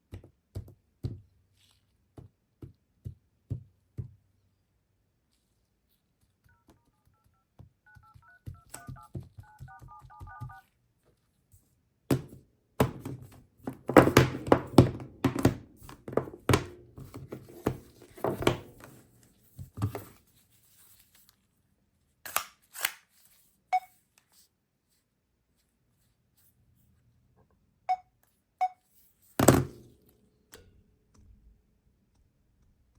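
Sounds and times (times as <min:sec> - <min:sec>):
tapping and clicking on a phone: 0:00.0 - 0:01.3, 0:06.2 - 0:10.7
two-tone keypad beeps: 0:07.9 - 0:10.6, 0:23.7 - 0:23.9, 0:27.9 - 0:28.8.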